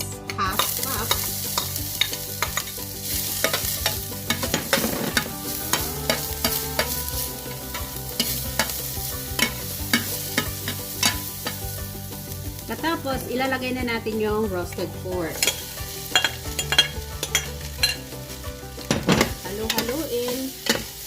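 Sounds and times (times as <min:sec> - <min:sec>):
onions sizzling in oil: 0:00.3 - 0:21.0.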